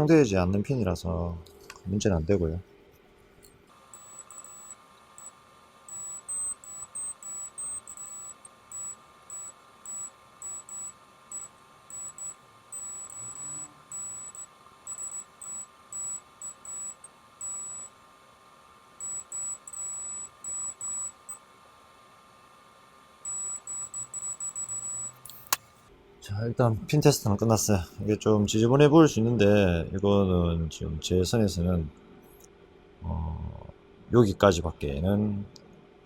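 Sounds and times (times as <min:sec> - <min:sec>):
faint steady hum: 0:00.0 - 0:36.0
multimeter continuity beeps: 0:03.8 - 0:18.0, 0:19.0 - 0:21.5, 0:23.2 - 0:25.6.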